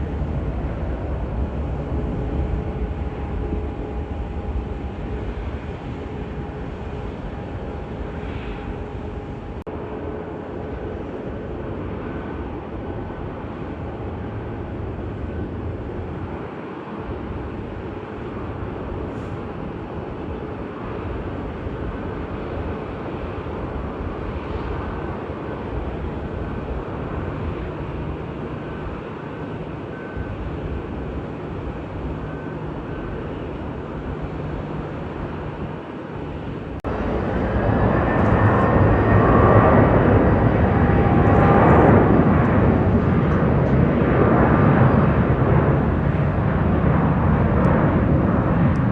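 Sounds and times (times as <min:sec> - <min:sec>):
jet engines rumbling with whine: 0:00.0 - 0:48.9.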